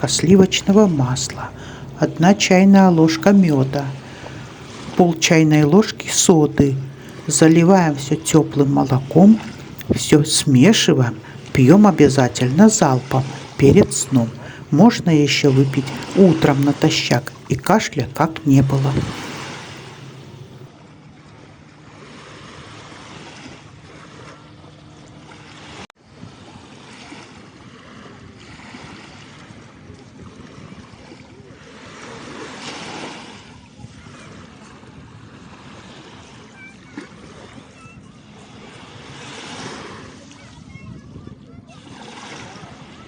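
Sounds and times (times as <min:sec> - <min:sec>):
waves rushing on shore: 0:00.0 - 0:20.6, 0:31.6 - 0:34.6, 0:38.3 - 0:40.8, 0:41.7 - 0:43.0
wind on microphone: 0:18.1 - 0:20.6.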